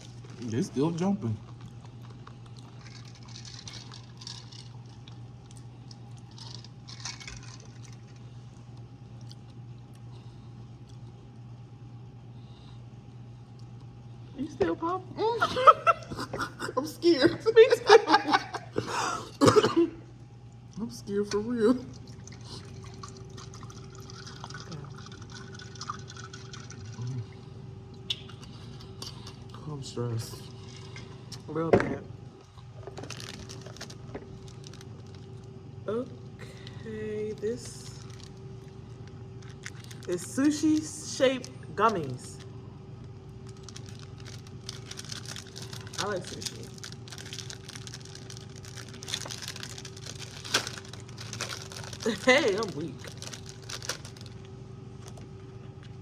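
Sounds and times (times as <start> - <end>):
steady low hum: 0.0 - 56.0
popping candy crackling: 32.8 - 35.3, 37.8 - 40.9, 43.3 - 55.2.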